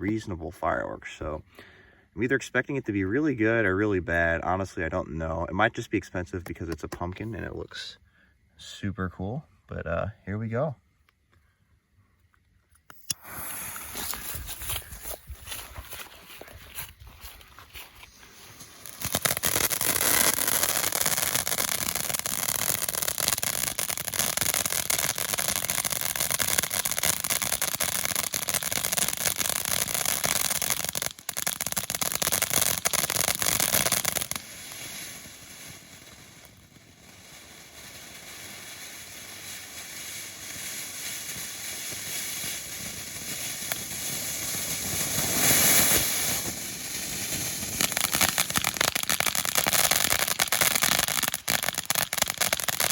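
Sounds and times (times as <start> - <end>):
firework fountain hissing and crackling: 13.0 - 16.6, 17.3 - 52.9.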